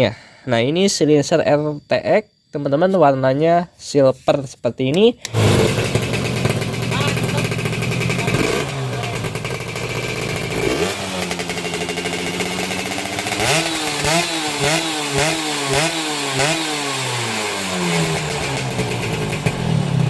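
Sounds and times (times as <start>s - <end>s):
two-stroke engine revving: 5.2s - 20.0s.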